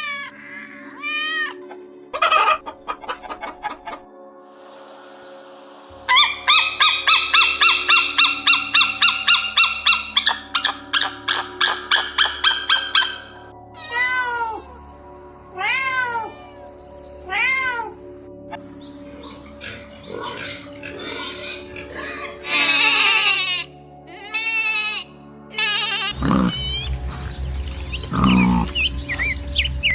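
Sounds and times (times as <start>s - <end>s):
high repeated animal calls: 0.0s - 4.0s, 6.1s - 14.5s, 19.2s - 23.7s, 24.3s - 29.9s
background music: 0.0s - 29.9s.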